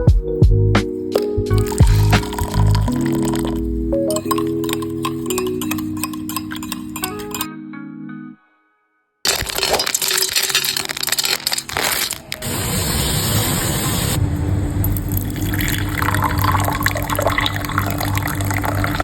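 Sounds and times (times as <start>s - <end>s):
water filling a container: 1.5s - 6.6s, 15.1s - 19.0s.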